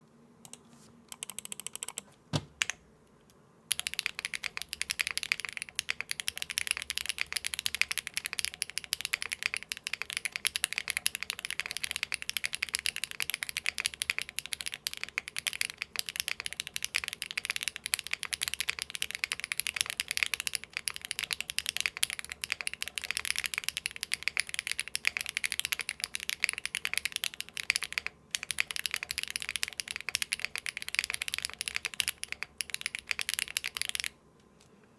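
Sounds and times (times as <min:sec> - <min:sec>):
fast typing on mechanical keyboard: 0:01.1 - 0:02.0, 0:03.7 - 0:34.2.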